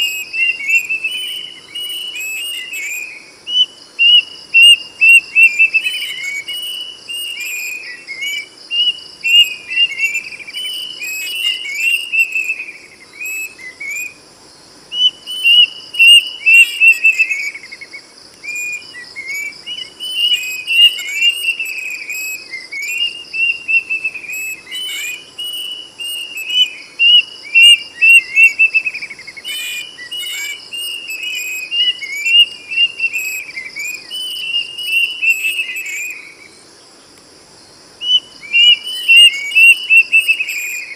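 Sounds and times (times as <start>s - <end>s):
high-pitched insect drone: 0.0s - 40.9s
cuckoo singing: 15.0s - 17.6s, 38.0s - 40.9s.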